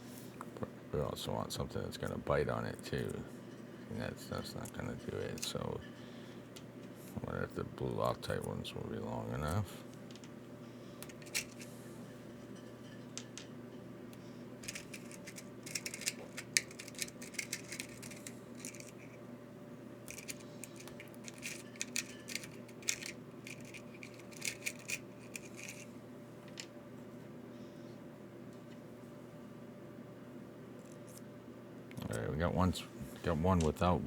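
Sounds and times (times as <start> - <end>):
steady low hum: 0.0 - 34.0
small metal screws rattling: 14.6 - 19.0, 20.1 - 25.8.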